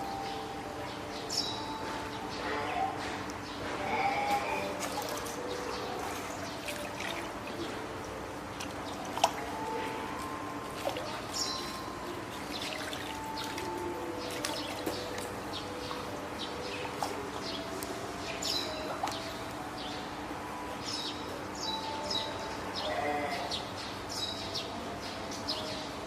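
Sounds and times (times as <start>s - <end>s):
seal pups crying: 3.8s - 4.8s
trickling and dripping water: 4.6s - 20.0s.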